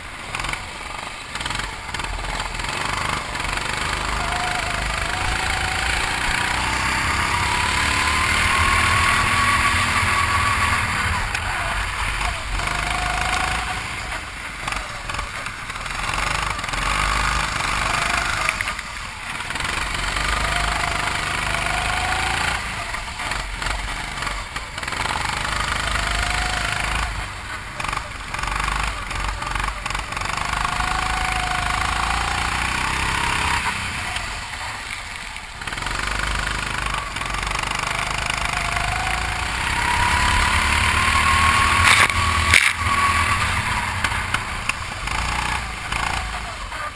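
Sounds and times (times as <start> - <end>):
go-kart engine revving: 0.0 - 46.9
steady rushing noise: 32.0 - 46.9.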